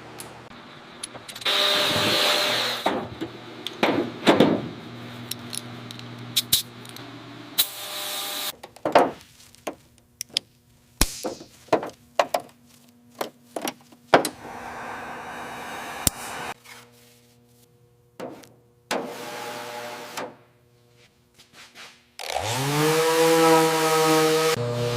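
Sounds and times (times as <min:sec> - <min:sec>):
rushing noise: 0:14.3 - 0:16.6
short hiss: 0:14.3 - 0:16.6.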